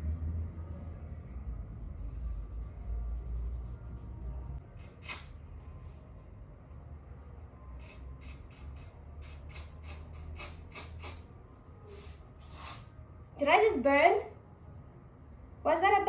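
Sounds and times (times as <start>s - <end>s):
spray bottle spritzing: 4.8s - 5.3s, 7.8s - 11.2s.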